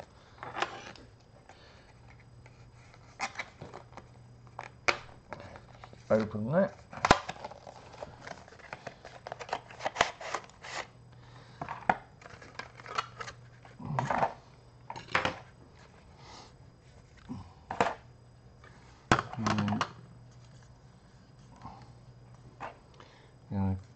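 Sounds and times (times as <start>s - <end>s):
packaging clicks and crinkles: 12.2s - 13.4s.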